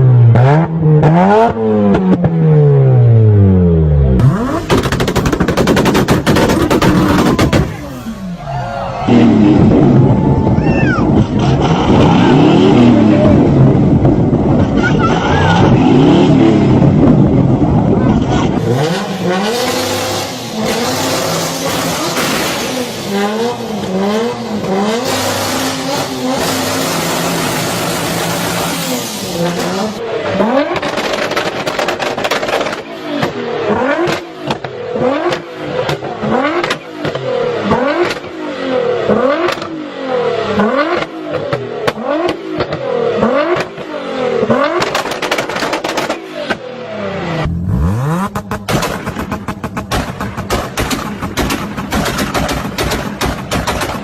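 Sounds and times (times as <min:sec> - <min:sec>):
car engines revving hard: 0:00.0 - 0:54.0
exhaust pops and cracks: 0:04.6 - 0:07.8, 0:30.7 - 0:33.4, 0:44.8 - 0:46.6, 0:48.3 - 0:54.0.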